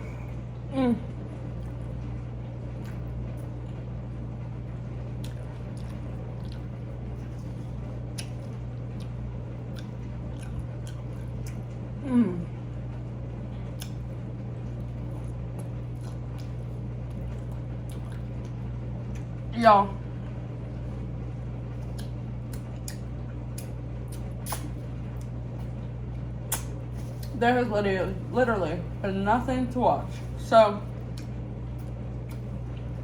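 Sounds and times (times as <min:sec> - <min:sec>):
dishwasher humming: 0:00.0 - 0:33.0
chewing and biting food: 0:02.7 - 0:03.9, 0:05.2 - 0:11.9, 0:13.5 - 0:19.4, 0:21.7 - 0:25.8, 0:31.0 - 0:33.0.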